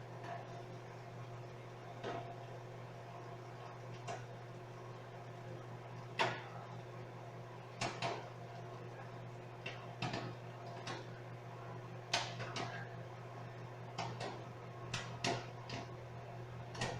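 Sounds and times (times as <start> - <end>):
microwave oven humming: 0.0 - 16.9
popcorn kernels popping: 12.1 - 12.8.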